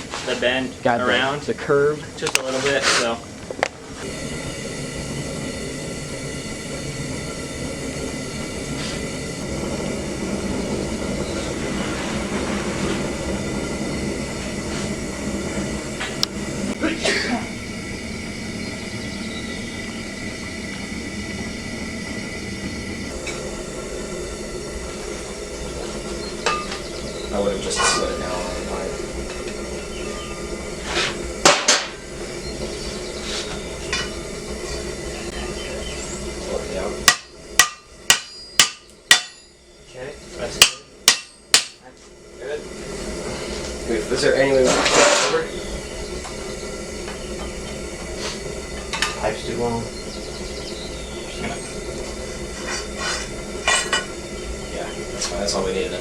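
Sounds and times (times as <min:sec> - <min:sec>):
steady low hum: 0:00.0 - 0:56.0
hammer striking hot steel: 0:23.0 - 0:39.6, 0:40.3 - 0:42.1, 0:46.2 - 0:50.7, 0:51.3 - 0:56.0.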